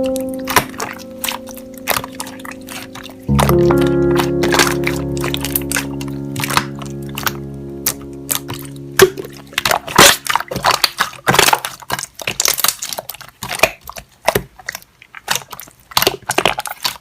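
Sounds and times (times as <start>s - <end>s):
slime crackling and popping: 0.0s - 17.0s.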